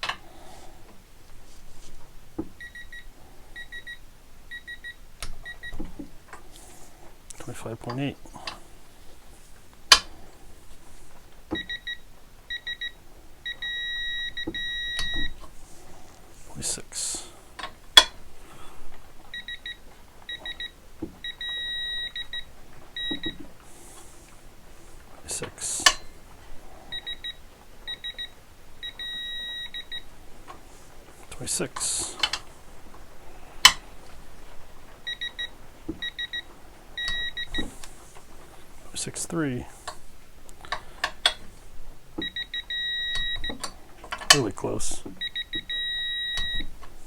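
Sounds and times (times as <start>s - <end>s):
torque meter beeping: 2.4s - 6.3s, 9.9s - 10.2s, 11.2s - 15.6s, 17.6s - 18.3s, 19.0s - 23.7s, 24.8s - 38.5s, 39.5s - 47.0s.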